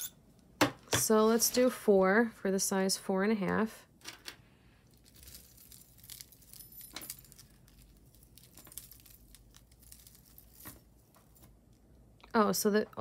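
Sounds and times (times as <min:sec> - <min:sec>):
jewelry clinking and rattling: 0:05.0 - 0:10.8.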